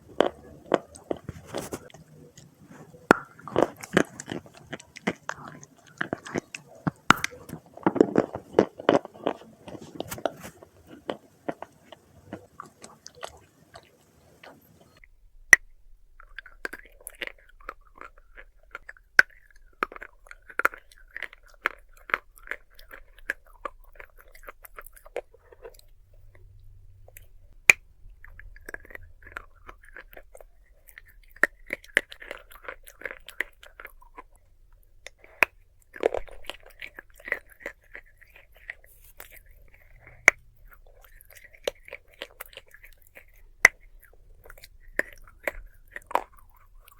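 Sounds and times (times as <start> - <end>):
clay being chewed: 0.0 - 46.9.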